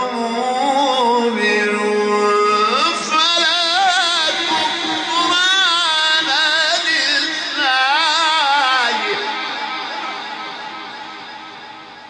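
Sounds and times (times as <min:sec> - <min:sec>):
man chanting melodically: 0:00.0 - 0:11.6.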